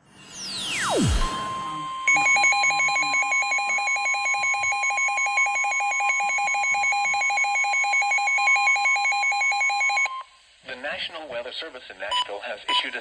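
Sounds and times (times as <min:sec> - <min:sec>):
steady warning tone: 0:00.0 - 0:10.3
fast alternating alarm beep: 0:00.2 - 0:10.3.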